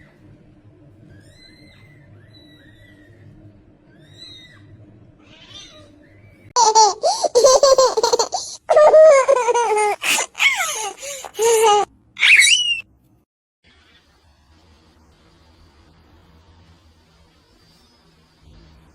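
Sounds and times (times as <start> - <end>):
person laughing loudly: 6.6 - 12.6
faint high chirping: 12.2 - 12.8.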